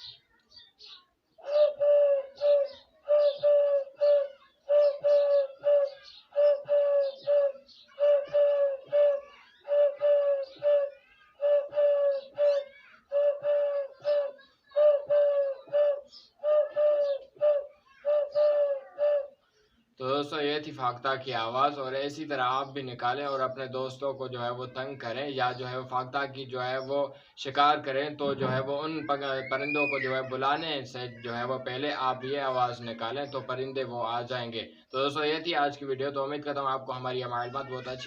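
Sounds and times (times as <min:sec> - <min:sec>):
man imitating dove coo: 0:01.4 - 0:19.4, 0:28.3 - 0:30.4.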